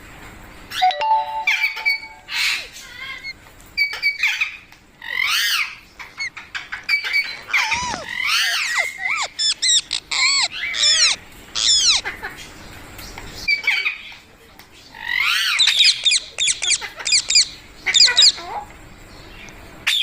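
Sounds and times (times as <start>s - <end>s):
parrot squawking: 5.0s - 12.3s, 15.0s - 18.5s.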